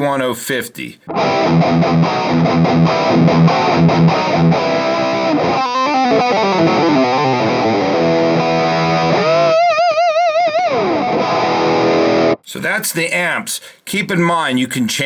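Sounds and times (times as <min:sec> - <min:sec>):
distorted electric guitar: 0:01.0 - 0:12.4.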